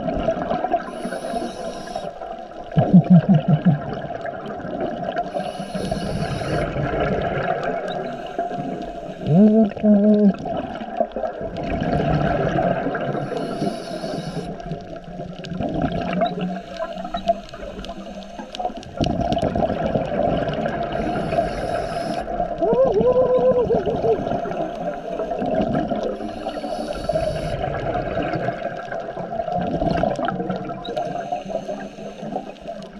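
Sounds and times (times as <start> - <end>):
bubbles rumbling and gurgling: 0.0 - 32.9
regulator hissing inhalations: 0.9 - 2.3, 5.3 - 6.7, 13.2 - 14.6, 16.5 - 19.0, 20.9 - 22.4, 26.1 - 27.6, 31.0 - 32.8.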